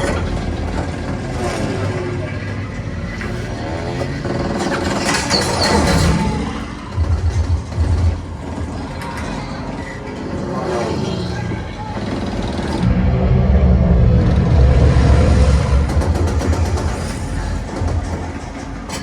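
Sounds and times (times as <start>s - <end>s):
aircraft engines droning: 6.5s - 19.0s
plane sweeping past: 12.8s - 17.8s
rapid deep thuds: 12.8s - 19.0s.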